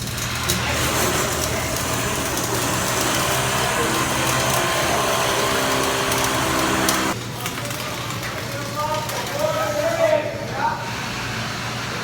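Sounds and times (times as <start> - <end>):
machinery hissing rush: 0.0 - 7.2.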